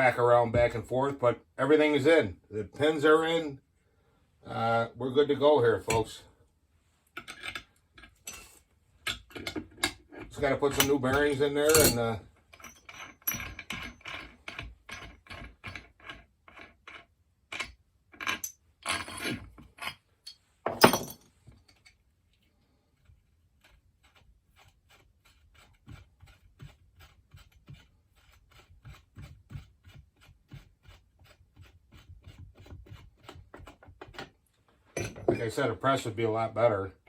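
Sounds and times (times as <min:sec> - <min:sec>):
metal parts clicking and clinking: 0:07.2 - 0:22.0, 0:35.0 - 0:35.4.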